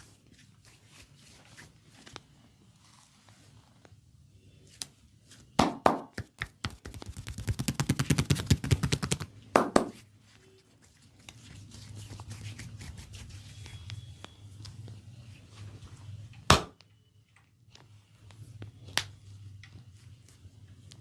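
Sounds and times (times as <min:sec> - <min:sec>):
hands slapping skin: 0:05.6 - 0:09.9.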